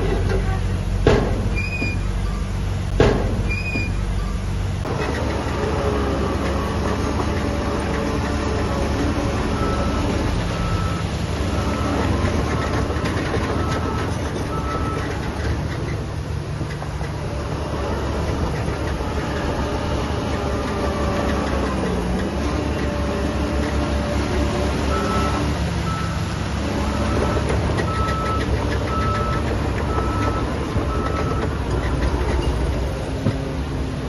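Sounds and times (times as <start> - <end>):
heavy diesel machinery running: 0.0 - 34.0
reversing alarm beeping: 1.6 - 2.6, 3.5 - 4.5, 9.3 - 15.2, 24.9 - 26.3, 26.9 - 31.5.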